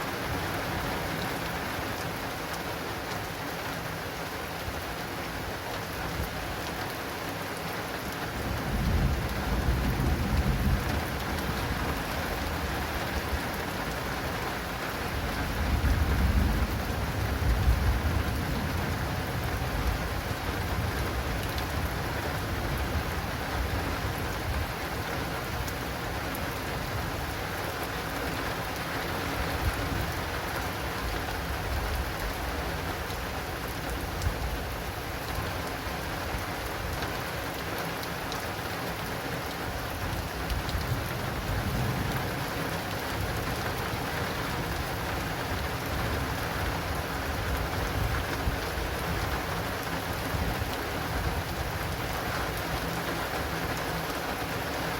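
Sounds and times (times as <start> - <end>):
heavy rain on awning: 0.0 - 54.9
low thunder rumbling: 8.4 - 13.4, 15.5 - 24.7.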